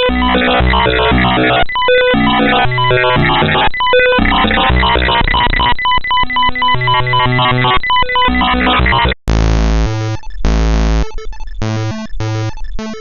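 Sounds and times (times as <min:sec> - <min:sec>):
glitchy synthesized buzzy tones: 0:00.0 - 0:13.0.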